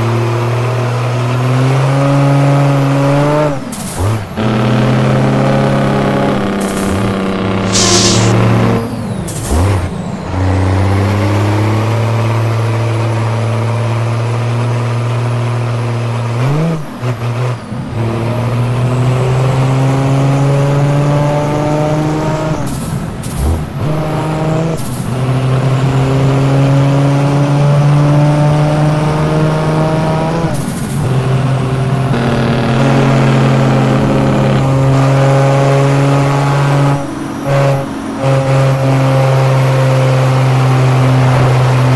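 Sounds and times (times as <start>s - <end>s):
truck engine accelerating: 0.0s - 41.9s
hiss at gear change: 7.7s - 8.4s.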